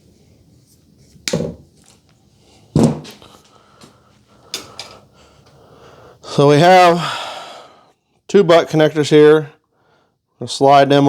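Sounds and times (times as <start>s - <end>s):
light clicks of parts: 4.5s - 5.6s.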